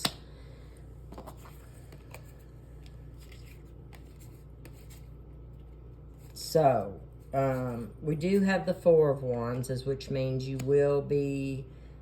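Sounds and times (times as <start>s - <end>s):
low room hum: 0.0s - 12.0s
cards rustling: 1.1s - 6.5s.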